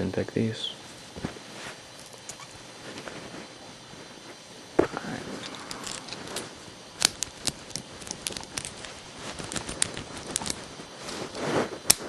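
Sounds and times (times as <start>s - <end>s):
soft rushing noise: 4.8s - 7.0s.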